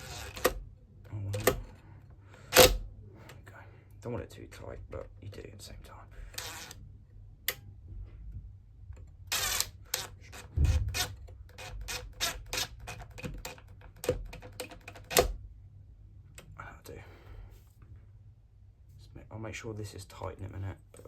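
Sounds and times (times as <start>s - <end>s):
screwdriver clicks and taps: 9.4s - 15.4s
dull knock: 10.5s - 11.2s.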